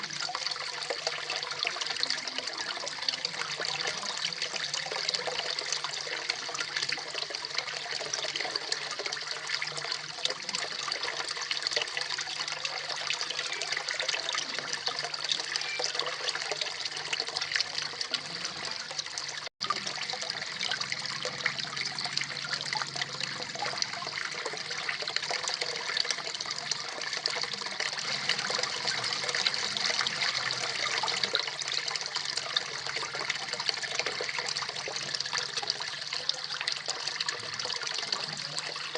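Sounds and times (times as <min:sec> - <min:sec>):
waterfall splashing into pond: 0:00.0 - 0:38.9.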